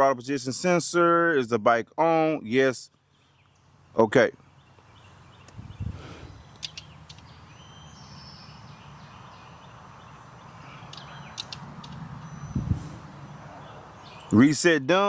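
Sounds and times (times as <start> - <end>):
light sharp clicks: 6.5 - 7.3, 10.8 - 12.0.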